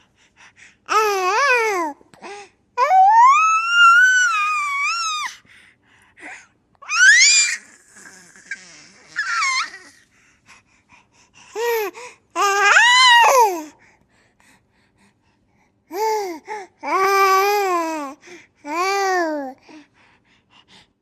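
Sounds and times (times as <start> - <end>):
baby squealing and babbling: 6.8 - 10.0.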